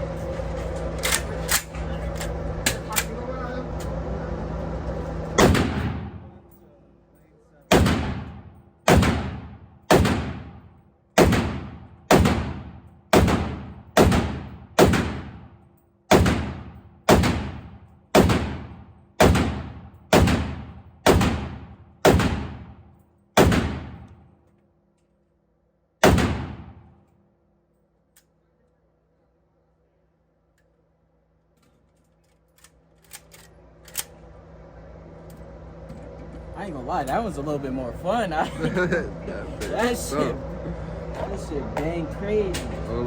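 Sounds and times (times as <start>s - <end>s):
rifle gunshots: 5.4s - 6.3s, 7.7s - 10.6s, 11.2s - 15.5s, 16.1s - 22.8s, 23.4s - 24.1s, 26.0s - 27.0s.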